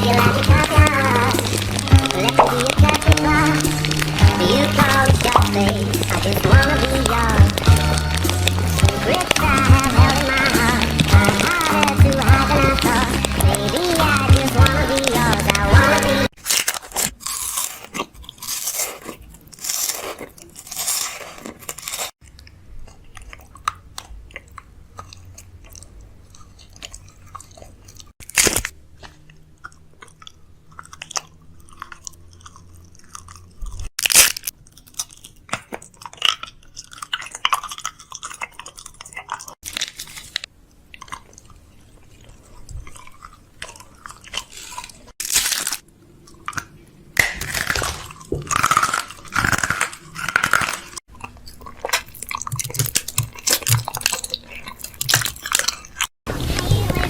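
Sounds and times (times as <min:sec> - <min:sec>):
crunching and crackling: 0:00.0 - 0:57.0.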